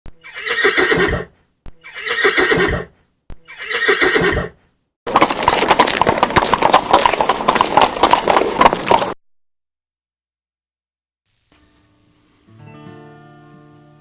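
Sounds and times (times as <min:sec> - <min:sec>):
horses whinnying: 0:00.2 - 0:02.9, 0:03.5 - 0:04.6
horses galloping: 0:05.1 - 0:09.2.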